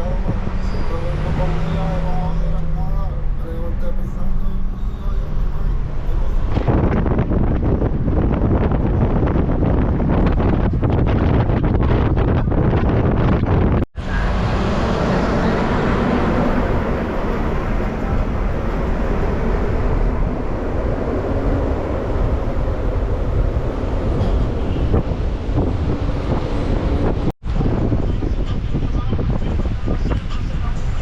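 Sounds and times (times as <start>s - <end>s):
car road rumble: 0.0s - 31.0s
wind noise: 4.7s - 31.0s.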